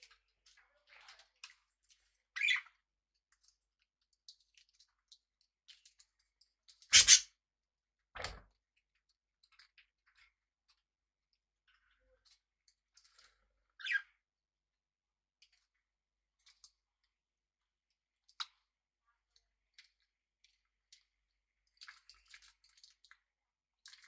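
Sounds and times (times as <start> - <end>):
birds clicking and scratching: 6.9 - 7.2.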